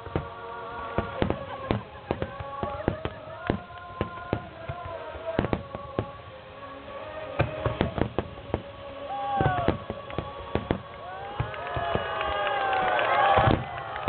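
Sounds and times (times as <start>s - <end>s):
firework bangs: 0.0s - 6.4s, 7.0s - 14.0s
music over loudspeakers: 0.0s - 12.0s
firework falling whistle: 7.2s - 14.0s.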